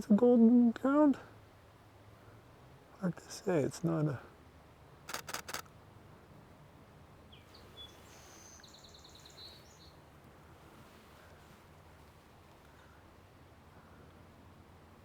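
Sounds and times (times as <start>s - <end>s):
faint outdoor background: 0.0s - 15.0s
distant songbird singing: 7.2s - 10.1s.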